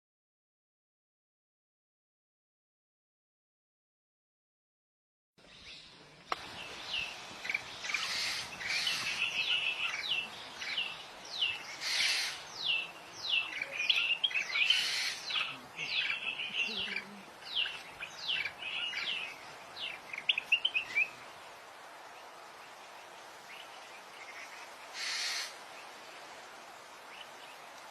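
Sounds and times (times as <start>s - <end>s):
background noise: 5.4s - 27.9s
harsh rasping bird calls: 6.9s - 21.2s, 24.2s - 25.6s.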